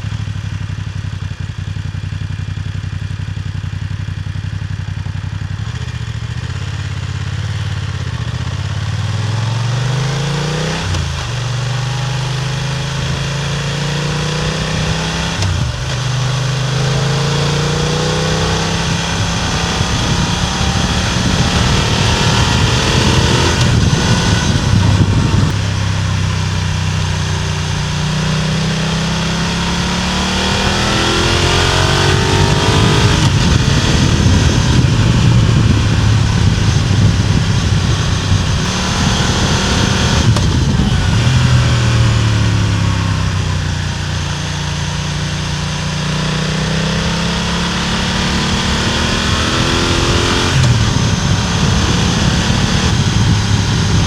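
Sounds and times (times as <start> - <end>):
motorcycle accelerating through gears: 0.0 - 54.0.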